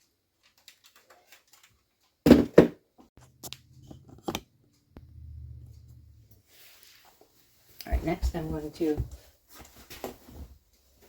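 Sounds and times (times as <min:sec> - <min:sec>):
low hum: 0:03.2 - 0:06.4.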